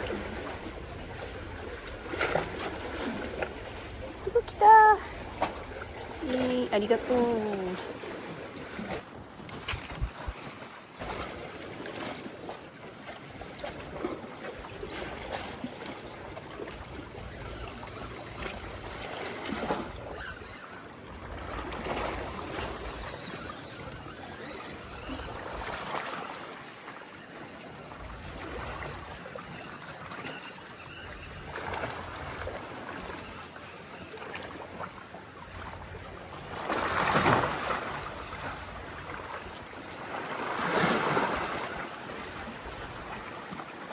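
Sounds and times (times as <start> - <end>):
seawater washing against concrete blocks: 0.0 - 26.5.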